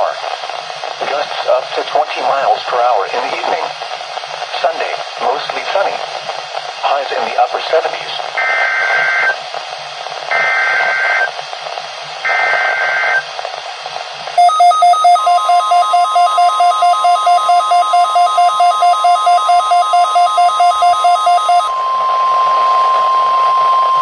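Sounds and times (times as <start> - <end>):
fast pulsing alarm beep: 14.4 - 21.7
warbling data tone bursts: 14.4 - 21.7
steady warning tone: 14.4 - 21.8.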